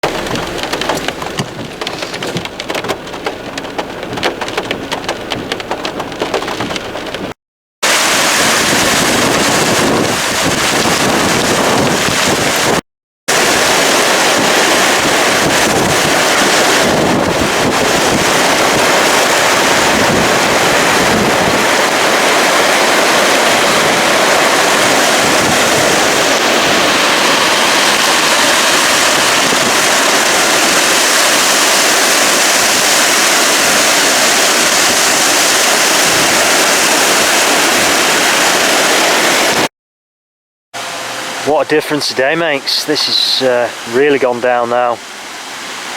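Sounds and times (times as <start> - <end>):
floodwater rushing: 0.0 - 39.7, 40.8 - 45.9
rain patter: 0.0 - 39.7, 41.4 - 45.9
wind buffeting microphone: 8.0 - 39.7.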